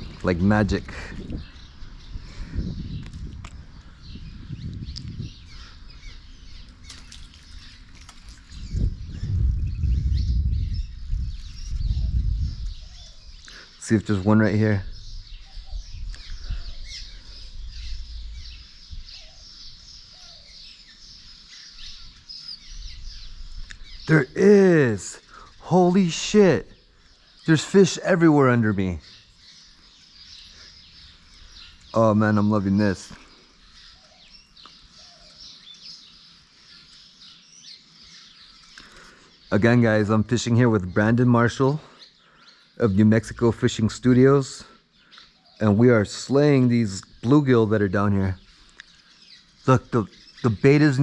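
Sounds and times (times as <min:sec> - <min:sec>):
outdoor background hiss: 0:00.0 - 0:51.0
small birds chirping: 0:00.0 - 0:51.0
steady low rumble: 0:08.4 - 0:13.4.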